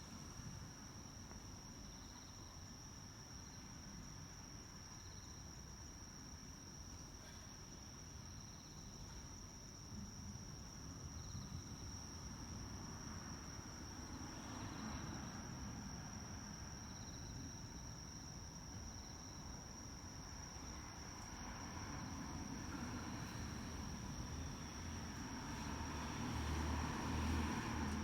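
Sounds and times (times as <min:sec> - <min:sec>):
insect chirps: 0:00.0 - 0:28.0
insect trill: 0:00.0 - 0:28.0
distant traffic rumble: 0:20.5 - 0:28.0.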